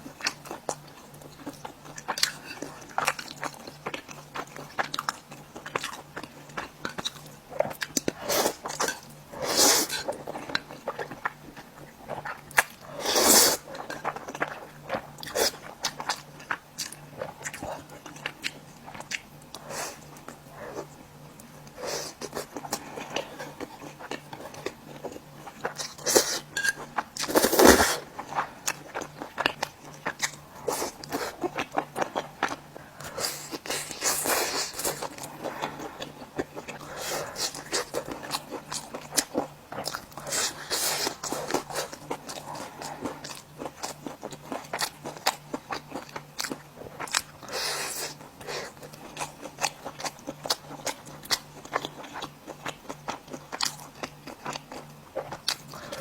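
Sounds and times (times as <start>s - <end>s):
crunchy chewing: 0.0s - 56.0s
faint low hum: 0.0s - 56.0s.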